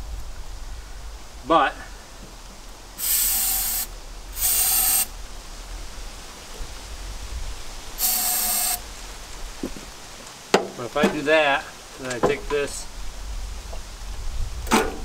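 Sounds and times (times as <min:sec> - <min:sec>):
aerosol spray can hissing: 0:03.0 - 0:05.1, 0:08.0 - 0:08.8.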